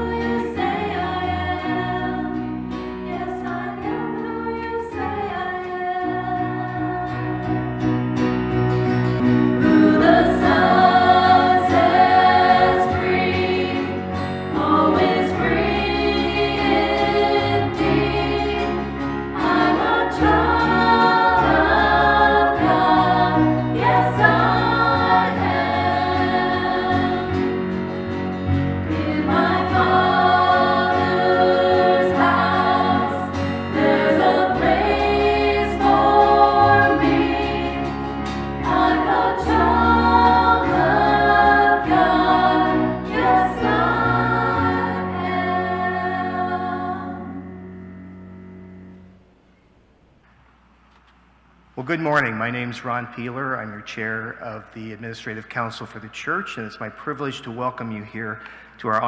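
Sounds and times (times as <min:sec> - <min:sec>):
choir singing: 0:00.0 - 0:49.2
sustained bass line: 0:00.0 - 0:49.2
instrumental accompaniment: 0:00.0 - 0:49.8.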